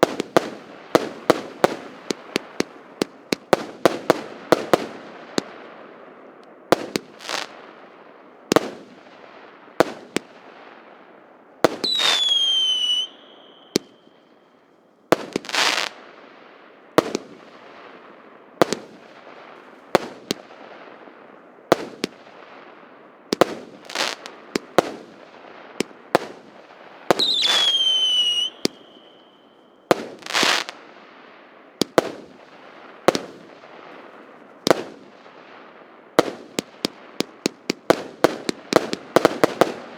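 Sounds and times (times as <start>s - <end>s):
firework bangs and crackle: 0.0s - 14.2s, 15.1s - 39.9s
firework whistle falling in pitch: 11.8s - 14.2s, 27.2s - 29.6s.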